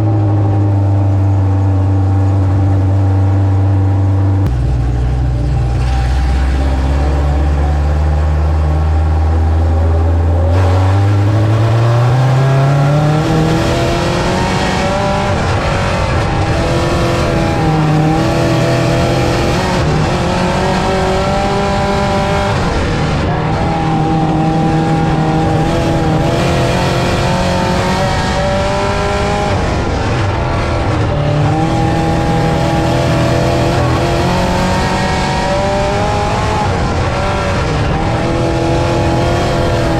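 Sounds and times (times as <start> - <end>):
race car engines accelerating: 0.0 - 39.9.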